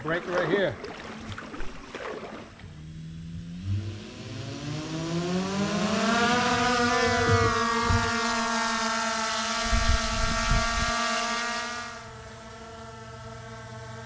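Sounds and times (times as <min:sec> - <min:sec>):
outboard motor running: 0:00.0 - 0:14.0
wind thumps on microphone: 0:06.4 - 0:08.8, 0:09.6 - 0:11.0.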